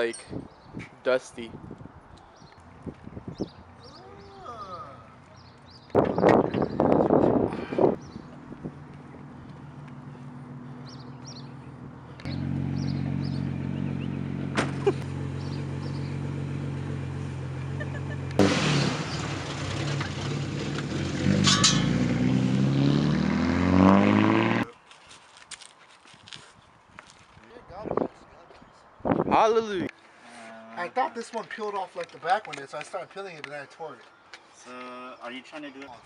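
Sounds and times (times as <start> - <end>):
car engine running and revving: 8.3 - 24.6.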